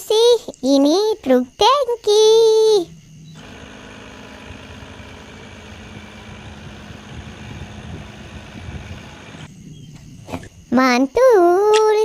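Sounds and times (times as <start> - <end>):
truck engine idling: 3.3 - 9.5.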